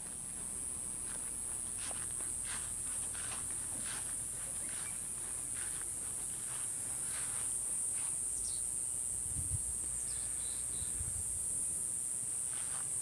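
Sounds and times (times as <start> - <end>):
high-pitched insect buzz: 6.3 - 13.0.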